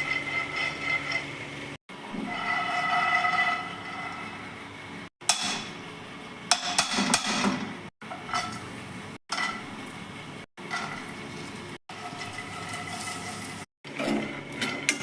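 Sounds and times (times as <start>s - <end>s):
kitchen utensils clinking: 10.6s - 15.0s.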